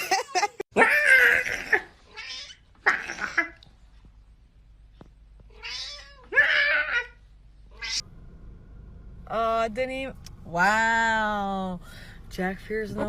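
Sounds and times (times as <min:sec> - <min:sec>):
cat meowing: 0:00.8 - 0:03.6, 0:05.5 - 0:08.0.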